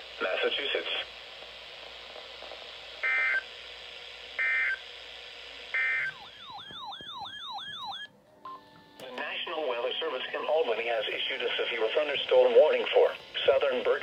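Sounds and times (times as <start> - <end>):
radio hiss: 0.0 - 3.1, 9.0 - 14.0.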